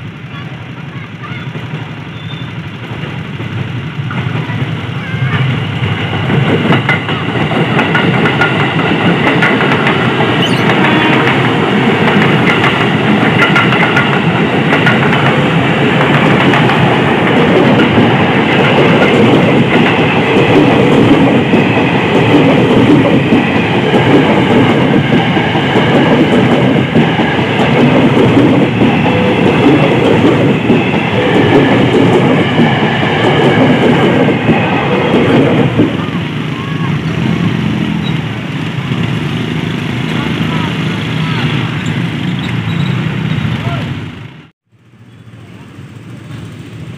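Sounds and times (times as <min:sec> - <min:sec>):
train wheels clattering on rails: 0:00.0 - 0:43.8.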